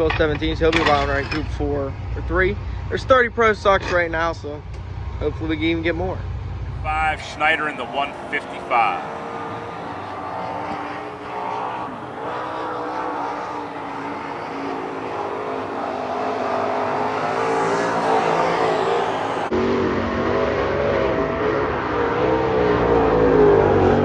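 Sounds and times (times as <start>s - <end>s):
race car engines revving: 6.8s - 19.5s.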